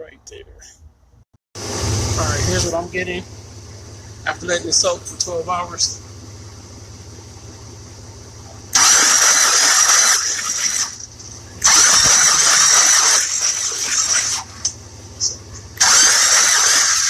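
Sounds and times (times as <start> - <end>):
high starter whine: 1.6 - 17.0
starter motor cranking engine: 8.4 - 17.0.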